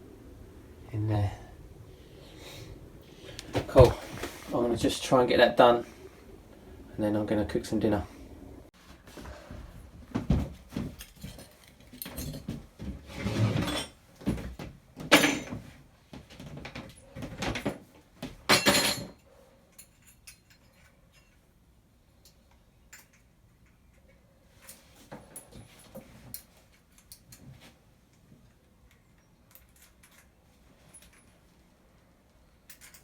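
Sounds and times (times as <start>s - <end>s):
tools knocking and clattering: 10.2s - 15.7s, 16.3s - 19.2s.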